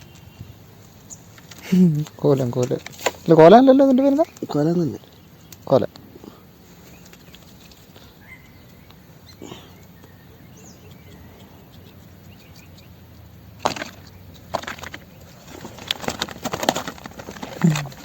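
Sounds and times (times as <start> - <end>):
faint chirps: 3.4 - 13.4.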